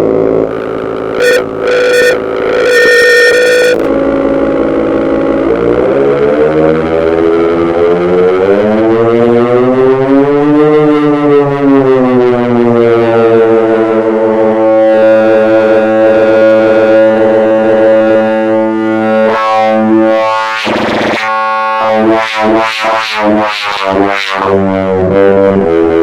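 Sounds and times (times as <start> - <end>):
buzzy synthesizer drone: 0.0 - 26.0
hissing filtered sweep: 0.5 - 3.9.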